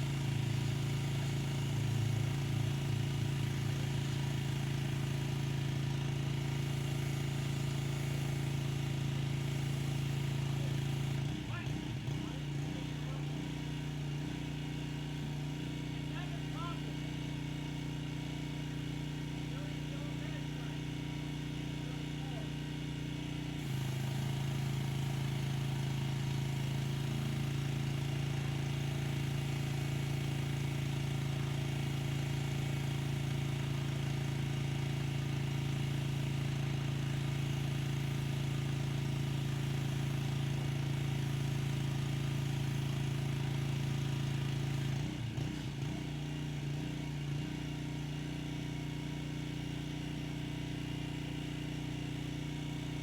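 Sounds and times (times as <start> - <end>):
pressure washer engine humming: 0.0 - 53.0.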